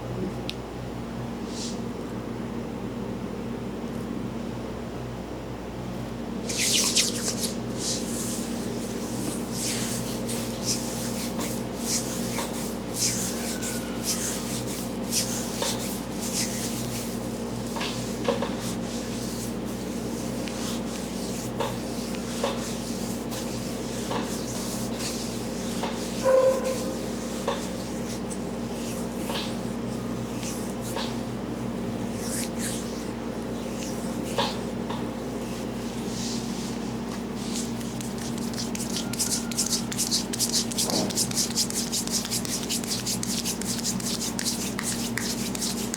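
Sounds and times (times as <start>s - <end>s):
hands rubbing skin and hair: 6.5s - 31.2s, 32.0s - 45.9s
short squeak: 26.2s - 26.9s.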